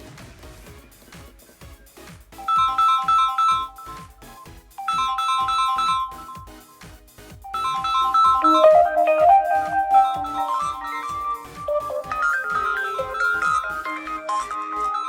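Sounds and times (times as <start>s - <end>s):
electronic phone ringtone: 2.4s - 4.2s, 4.8s - 6.5s, 7.5s - 15.0s.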